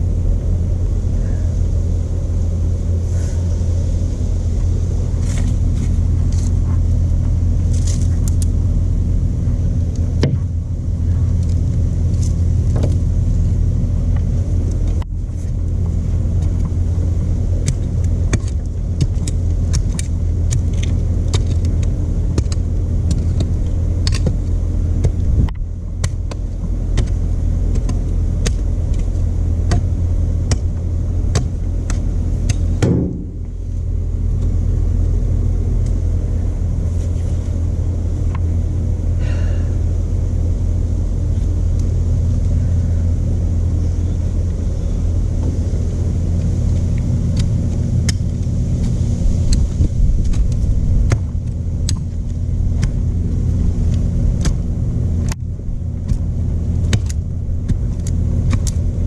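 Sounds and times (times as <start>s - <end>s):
engine running steadily: 0.0s - 59.0s.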